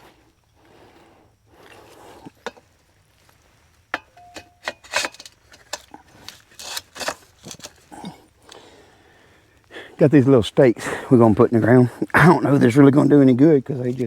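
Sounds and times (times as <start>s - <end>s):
short metallic ring: 4.0s - 5.5s
metal parts clinking: 4.0s - 7.9s.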